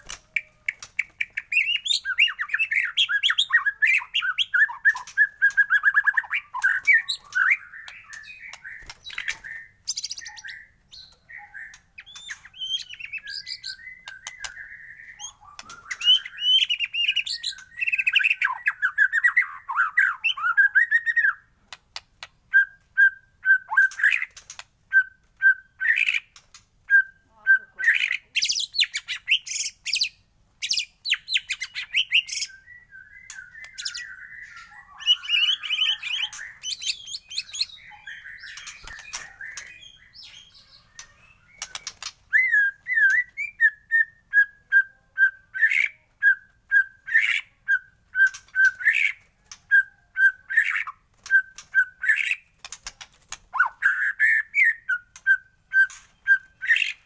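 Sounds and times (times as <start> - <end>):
songbird singing: 0.0 - 57.0.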